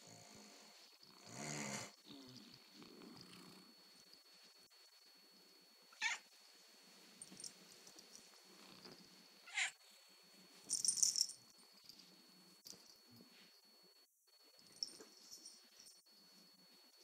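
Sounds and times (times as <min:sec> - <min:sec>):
pet snoring: 0:00.0 - 0:03.8.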